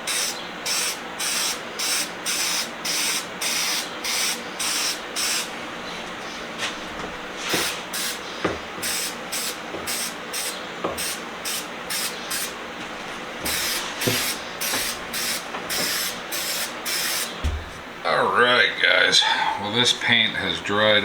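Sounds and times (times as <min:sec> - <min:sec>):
paint spraying in hissing bursts: 0:00.0 - 0:05.6, 0:07.4 - 0:08.2, 0:08.8 - 0:12.6, 0:13.4 - 0:17.4.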